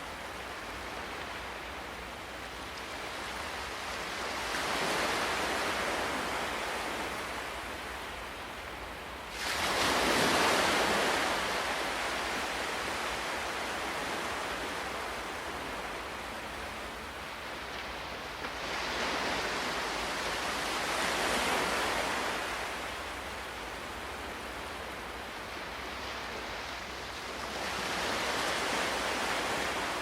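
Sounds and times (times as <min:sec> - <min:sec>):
ocean waves breaking: 0:00.0 - 0:30.0.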